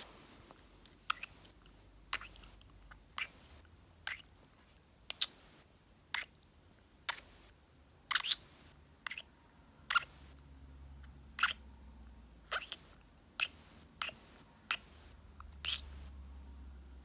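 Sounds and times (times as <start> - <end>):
lip smacks and kisses: 1.1 - 2.6, 15.6 - 15.9.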